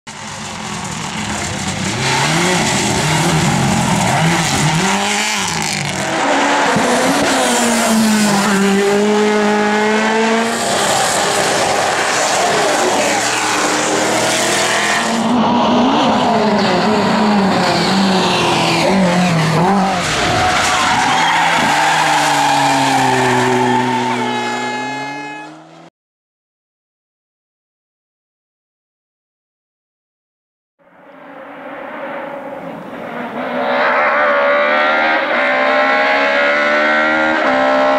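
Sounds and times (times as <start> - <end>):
heavy tyre noise: 0.1 - 25.9
rally car engine revving: 0.1 - 25.9, 31.2 - 37.9.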